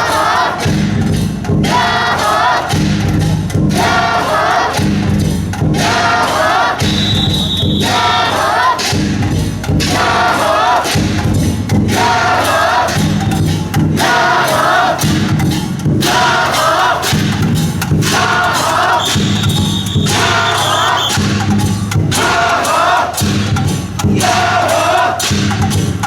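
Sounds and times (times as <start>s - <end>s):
team chanting: 0.0s - 26.0s
metallic strikes: 4.7s - 26.0s
drum thumps: 6.8s - 26.0s.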